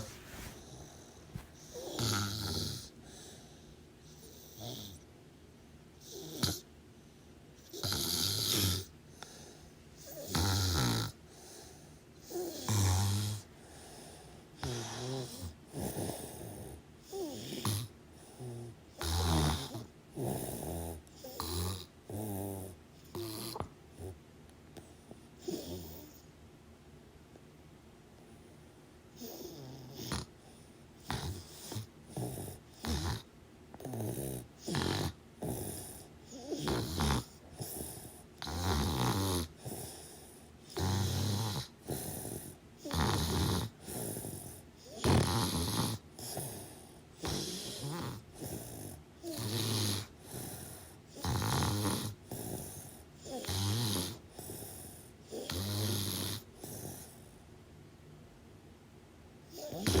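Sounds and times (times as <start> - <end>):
rasping snores: 0.0 - 3.3, 4.1 - 5.0, 6.0 - 6.7, 7.6 - 9.4, 10.0 - 11.6, 12.2 - 13.5, 14.6 - 24.2, 25.4 - 26.2, 29.2 - 30.3, 31.0 - 57.2, 59.5 - 60.0.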